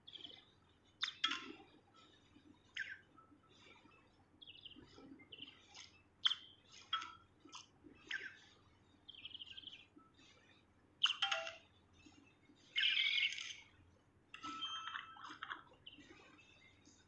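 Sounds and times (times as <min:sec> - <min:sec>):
songbird singing: 0:00.0 - 0:07.2, 0:08.0 - 0:13.8.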